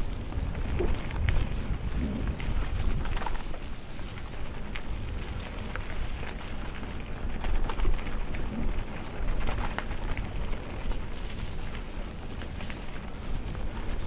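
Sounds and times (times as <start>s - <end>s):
stones and bike rattling: 0.0s - 14.0s
tyres on gravel: 0.0s - 14.0s
wind rumble on microphone: 0.0s - 14.0s.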